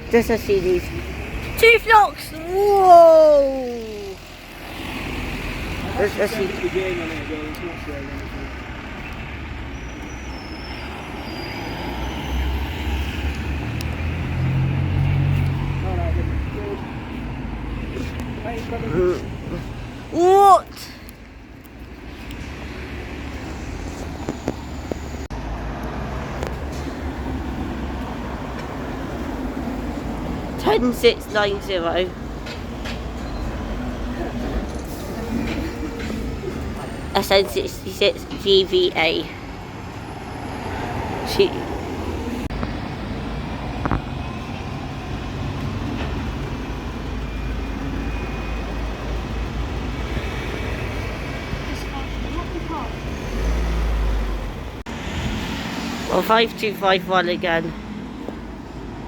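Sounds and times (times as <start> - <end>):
vehicle engine and tyres rumbling: 0.0 - 59.0.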